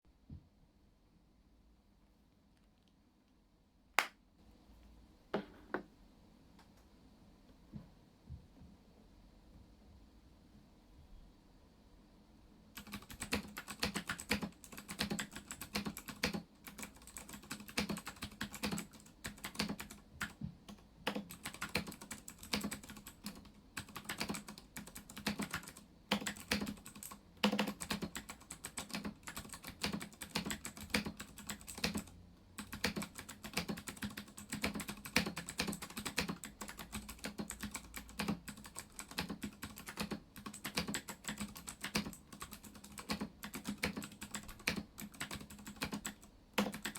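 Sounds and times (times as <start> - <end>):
clicky mechanical keyboard typing: 12.8 - 46.9.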